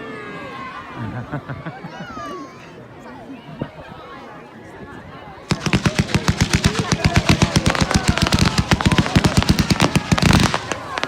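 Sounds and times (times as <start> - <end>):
fireworks cracks and bangs: 5.5 - 11.0.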